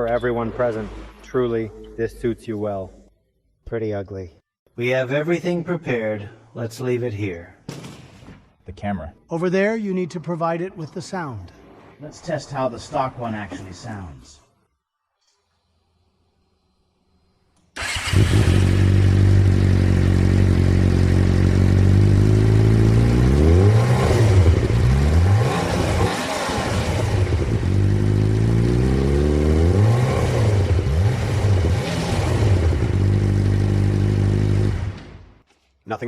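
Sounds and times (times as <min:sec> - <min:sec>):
motorcycle engine idling and revving: 0:17.8 - 0:35.4.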